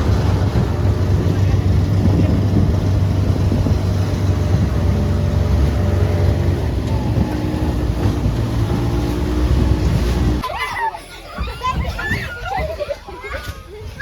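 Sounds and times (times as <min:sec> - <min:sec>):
vehicle engine rumbling: 0:00.0 - 0:10.4.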